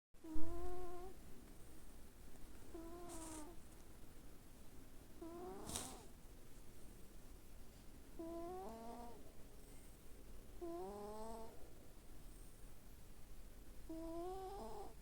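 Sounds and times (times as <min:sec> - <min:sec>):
hiss of air: 0:05.6 - 0:06.1.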